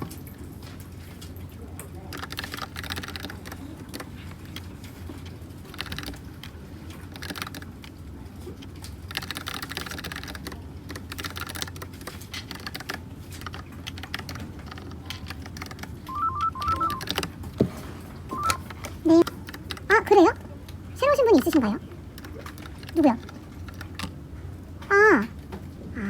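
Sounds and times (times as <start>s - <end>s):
mechanical keyboard typing: 2.1s - 4.9s, 5.6s - 8.0s, 8.6s - 17.3s, 18.4s - 20.4s, 21.2s - 24.2s.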